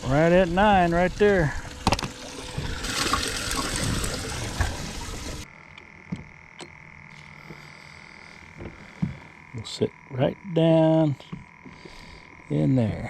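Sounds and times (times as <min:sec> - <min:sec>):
water splashing and gushing: 0:00.0 - 0:05.5
faint steady hum: 0:00.0 - 0:13.0.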